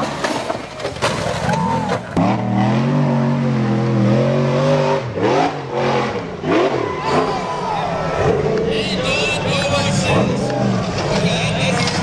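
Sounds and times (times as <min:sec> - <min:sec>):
engine revving hard: 0:02.2 - 0:12.0.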